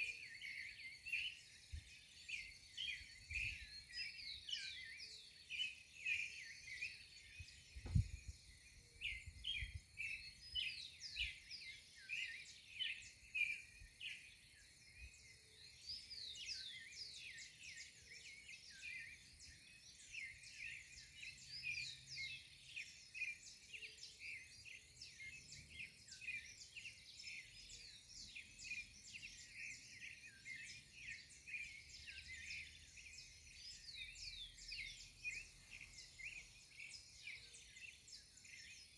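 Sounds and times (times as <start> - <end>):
small birds chirping: 0.0 - 38.9
low thump: 7.8 - 8.2.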